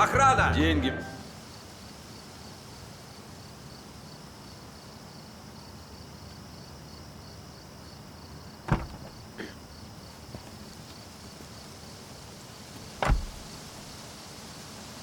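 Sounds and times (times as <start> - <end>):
faint background noise: 0.0 - 15.0
crickets chirping: 1.1 - 14.9
sharp thump: 8.7 - 9.3, 13.0 - 13.9.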